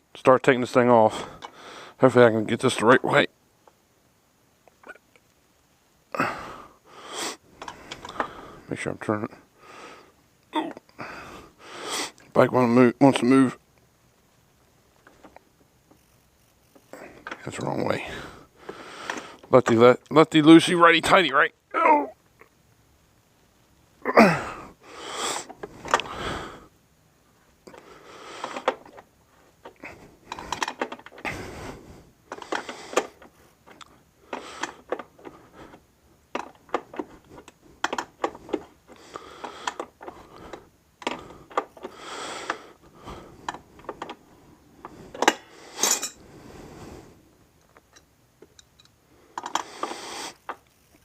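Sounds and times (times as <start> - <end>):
wrench clinking and scraping on metal: 29.6 - 31.2, 36.3 - 38.8, 45.1 - 46.2, 47.8 - 50.6.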